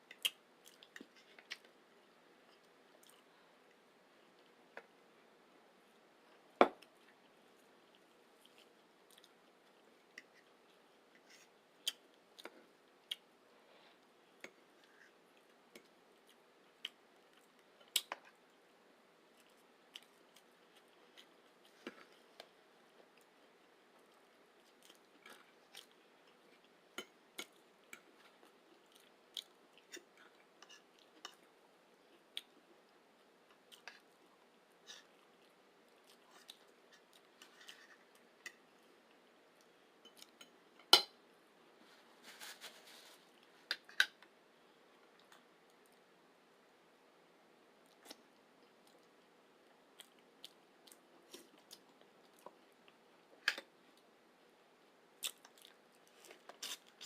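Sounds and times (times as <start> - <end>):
chewing and mouth clicks: 55.2 - 57.0.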